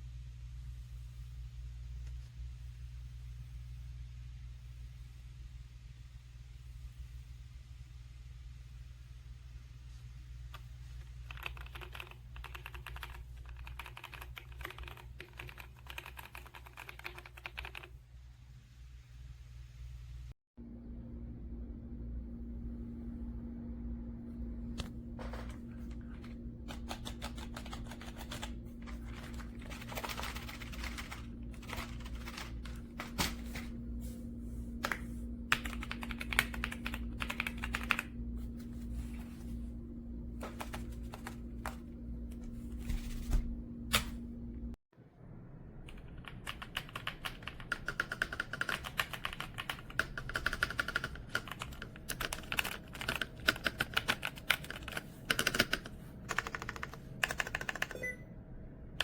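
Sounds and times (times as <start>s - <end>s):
steady low hum: 0.0s - 59.0s
mechanical keyboard typing: 11.2s - 17.9s, 26.6s - 33.3s, 35.5s - 38.1s, 45.9s - 58.2s.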